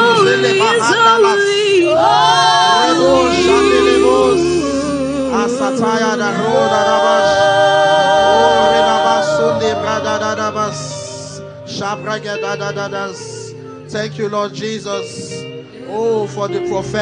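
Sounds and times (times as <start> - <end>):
sustained chords: 0.0 - 17.0
low bass: 1.8 - 17.0
person singing long notes: 1.9 - 11.2.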